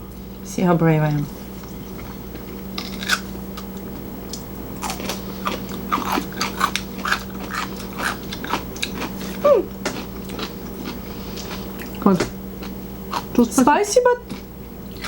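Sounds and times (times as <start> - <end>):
close-up crunchy chewing: 1.6 - 13.5.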